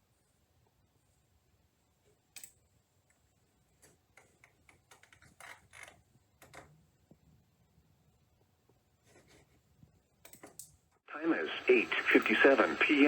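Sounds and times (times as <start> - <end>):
faint irregular clicks: 2.0 - 7.2, 9.8 - 13.0.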